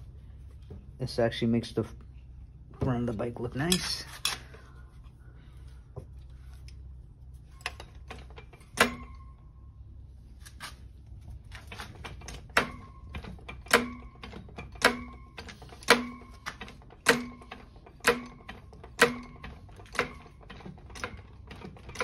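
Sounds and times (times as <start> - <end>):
sharp metallic knocks: 12.5 - 20.3.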